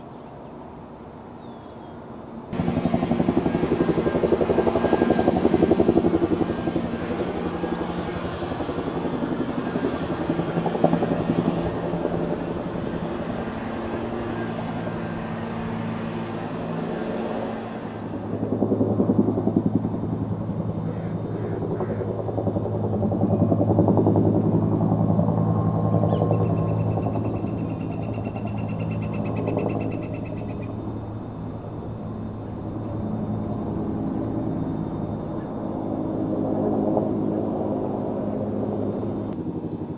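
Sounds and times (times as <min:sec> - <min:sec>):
helicopter rotor chop: 0:02.5 - 0:39.9.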